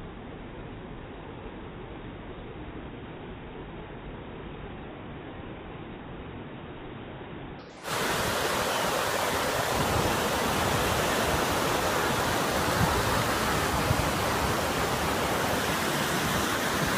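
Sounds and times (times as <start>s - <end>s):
ocean surf breaking on a beach: 7.8s - 16.9s.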